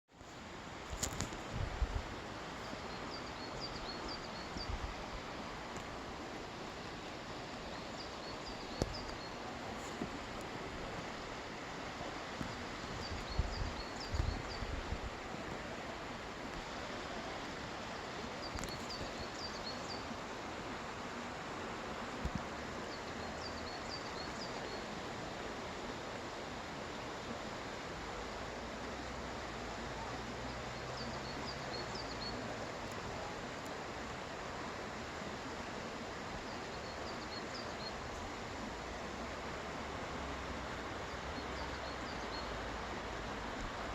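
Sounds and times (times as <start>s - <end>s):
steady outdoor hiss: 0.1s - 43.9s.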